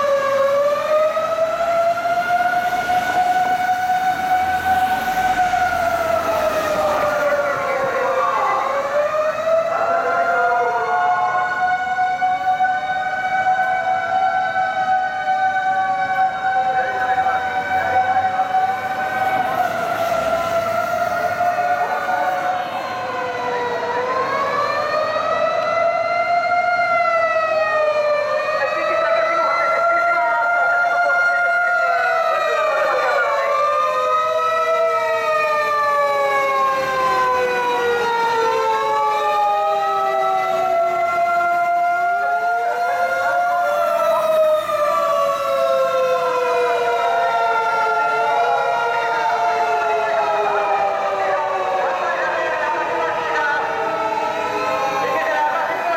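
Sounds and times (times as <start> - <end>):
rising and falling siren: 0.0 - 55.9
steady fire engine siren: 0.0 - 55.9.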